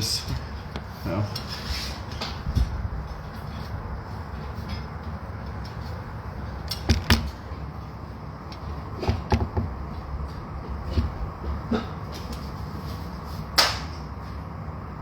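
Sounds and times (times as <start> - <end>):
steady low rumble: 2.3 - 15.0
knocks and clicks of tools: 6.6 - 7.4, 8.5 - 10.2.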